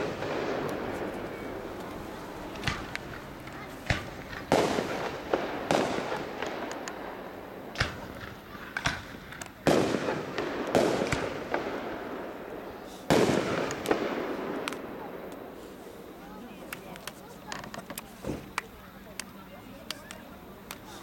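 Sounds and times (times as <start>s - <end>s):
fireworks cracks and pops: 0.0s - 12.3s, 12.9s - 21.0s
fireworks booms with echo: 0.0s - 16.5s.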